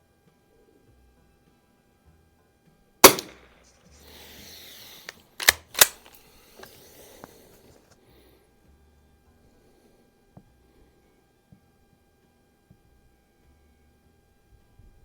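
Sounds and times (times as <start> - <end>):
rifle shot: 3.0 - 3.5, 5.4 - 6.1
small clicks: 5.0 - 7.4.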